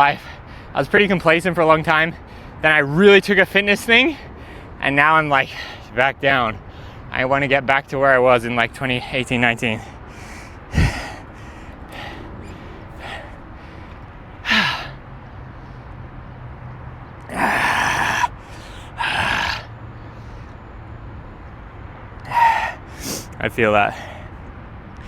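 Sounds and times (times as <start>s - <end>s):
man exhaling and sighing: 10.0s - 13.8s, 14.4s - 15.0s, 17.3s - 19.7s, 22.3s - 24.2s.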